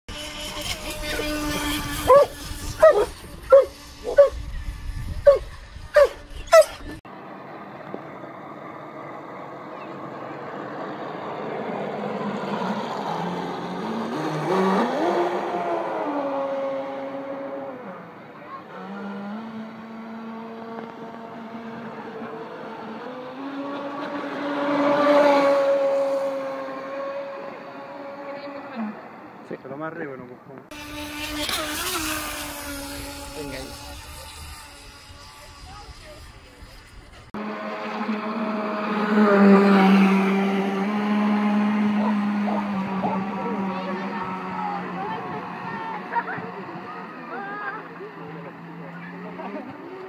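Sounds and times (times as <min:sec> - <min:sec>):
model speedboat motor whining: 0:00.1 - 0:06.9, 0:10.2 - 0:29.1, 0:30.7 - 0:50.0
dog barking: 0:02.1 - 0:04.4, 0:06.0 - 0:06.8.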